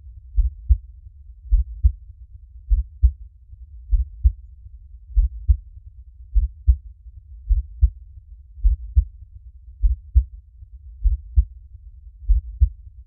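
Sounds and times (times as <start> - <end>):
faint low rumble: 0.0 - 13.0
slow heartbeat thumps: 0.4 - 0.8, 1.5 - 2.0, 2.7 - 3.2, 3.9 - 4.4, 5.1 - 5.6, 6.4 - 6.8, 7.5 - 8.0, 8.6 - 9.1, 9.8 - 10.3, 11.0 - 11.5, 12.2 - 12.8.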